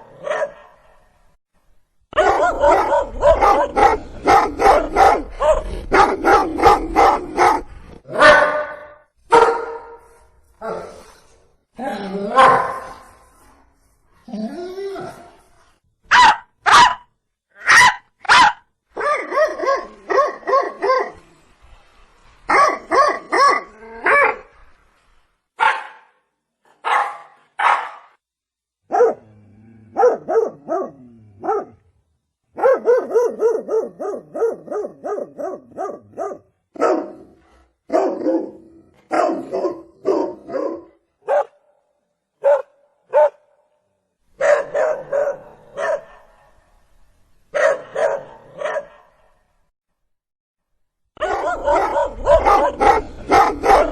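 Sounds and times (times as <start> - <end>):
dog barking: 0.0 - 1.0, 2.1 - 10.1, 12.4 - 13.0, 16.1 - 21.2, 22.5 - 24.4, 25.6 - 26.2, 26.8 - 28.2, 28.9 - 29.3, 29.9 - 31.8, 32.5 - 41.7, 42.4 - 43.6, 44.4 - 46.6, 47.5 - 49.3, 51.2 - 53.9.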